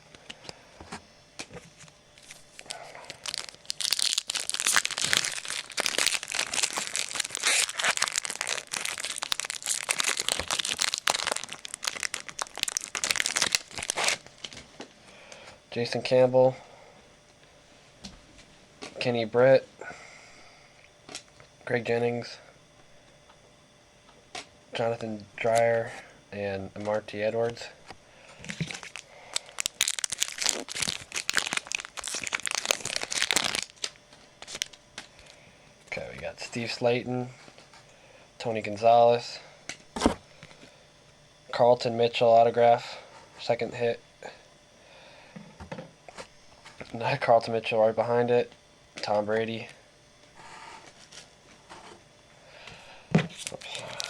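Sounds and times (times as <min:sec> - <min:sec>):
card pack wrapper crinkling: 0:02.2 - 0:14.6, 0:28.5 - 0:35.4, 0:53.3 - 0:54.0.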